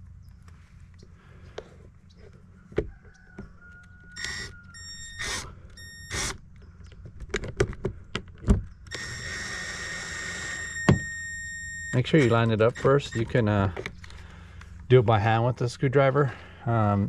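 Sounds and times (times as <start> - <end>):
high electronic beep: 4.2 - 6.3, 8.9 - 13.4.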